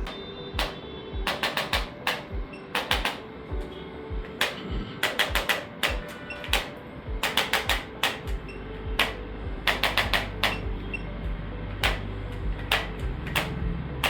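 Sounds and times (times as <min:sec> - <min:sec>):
background music with low beat: 0:00.0 - 0:14.0
adjusting gun clicks: 0:04.4 - 0:08.4, 0:09.0 - 0:10.7, 0:11.8 - 0:13.6.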